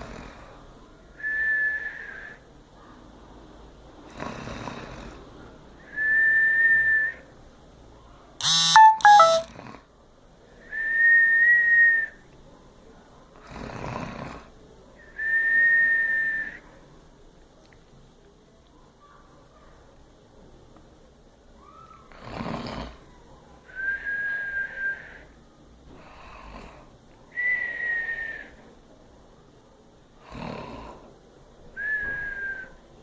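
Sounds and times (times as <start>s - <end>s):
high-pitched snoring whistle: 8.4s - 9.5s, 23.7s - 25.3s, 27.4s - 28.6s.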